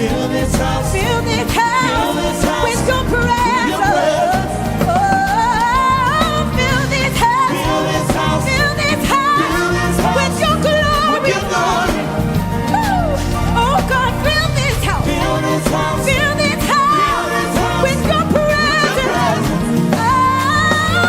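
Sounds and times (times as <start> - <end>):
gospel band playing: 0.0 - 21.0
lead vocalist singing: 0.0 - 21.0
rising sweep: 11.5 - 17.9.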